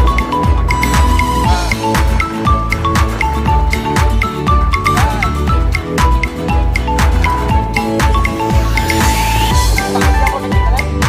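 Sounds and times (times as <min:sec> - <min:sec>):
electronic music with drum beat: 0:00.0 - 0:11.0
synth rising sweep: 0:07.8 - 0:10.2.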